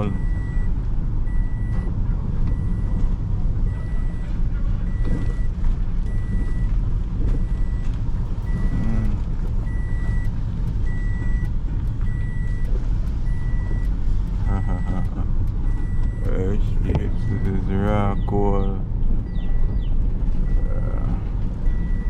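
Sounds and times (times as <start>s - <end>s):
seatbelt warning chime beeping: 0.0s - 0.7s, 1.3s - 1.9s, 4.9s - 6.7s, 7.3s - 18.4s, 21.7s - 22.0s
car driving rumble: 0.0s - 22.0s.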